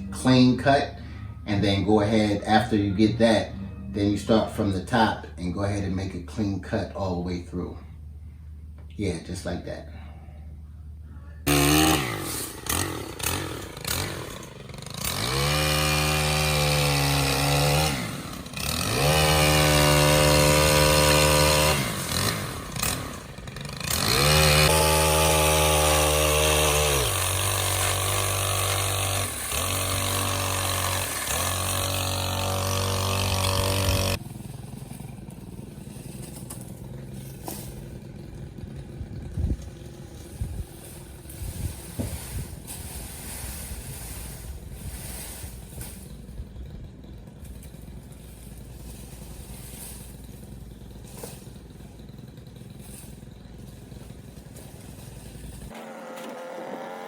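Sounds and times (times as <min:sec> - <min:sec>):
pole saw engine revving: 0:11.5 - 0:57.0.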